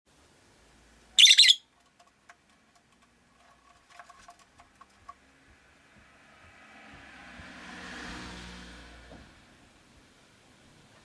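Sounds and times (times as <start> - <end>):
lovebird shrill call: 1.2 - 1.7.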